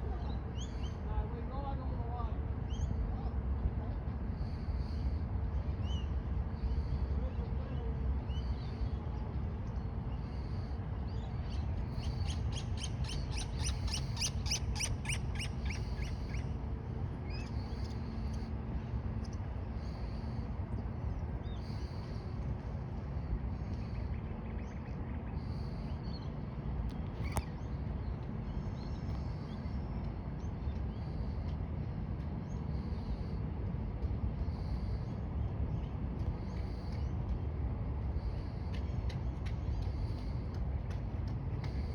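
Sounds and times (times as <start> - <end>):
birds chirping: 9.7 - 16.6.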